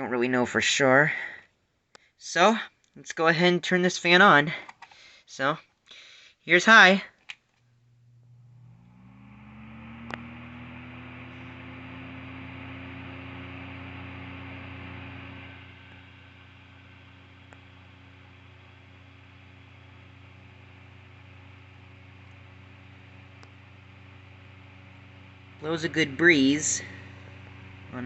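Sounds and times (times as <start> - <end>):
box fan motor hum: 7.6 - 28.0
fan click: 8.8 - 16.0.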